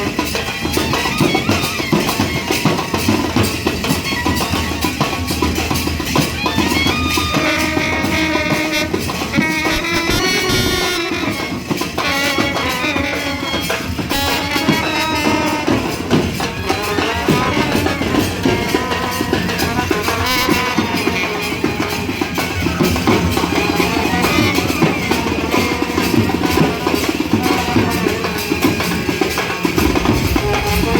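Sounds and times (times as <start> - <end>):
brass band melody: 0.0 - 30.9
dense steady drumming: 8.7 - 11.3, 29.3 - 30.9.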